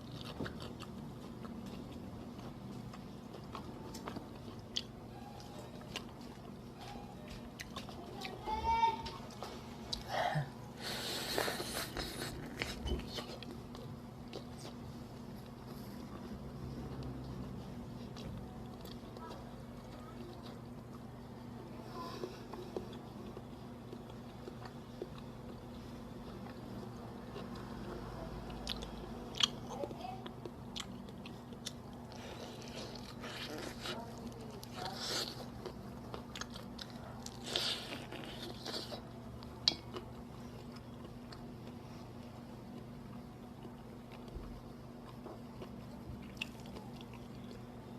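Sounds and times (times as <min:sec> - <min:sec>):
chewing crunchy fried chicken: 0:00.0 - 0:10.2, 0:10.8 - 0:47.9
low background hum: 0:00.0 - 0:47.9
fried chicken crunching: 0:28.5 - 0:41.8.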